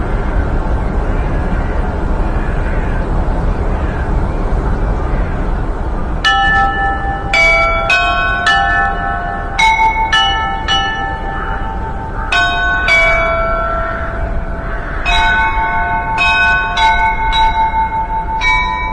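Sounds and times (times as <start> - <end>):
bells chiming: 6.2 - 18.9.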